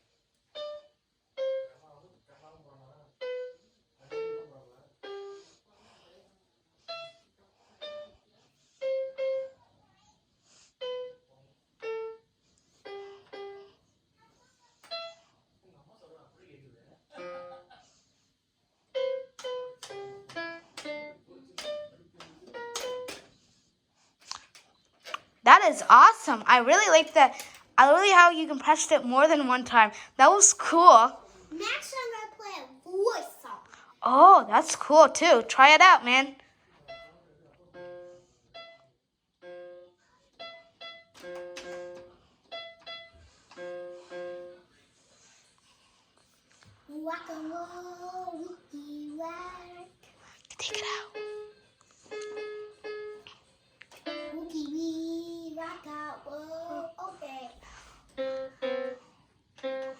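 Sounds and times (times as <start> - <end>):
toy keyboard electronic notes: 19.0 - 23.3, 40.4 - 44.6.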